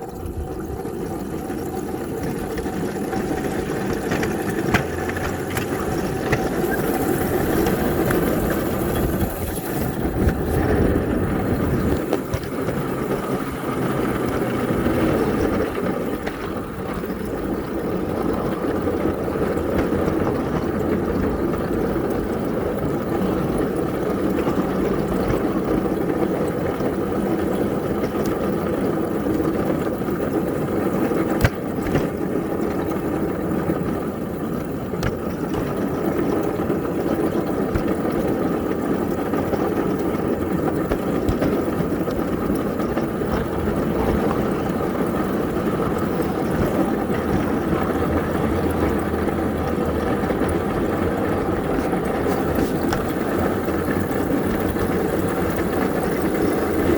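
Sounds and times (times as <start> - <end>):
small locomotive engine running: 0.0 - 56.9.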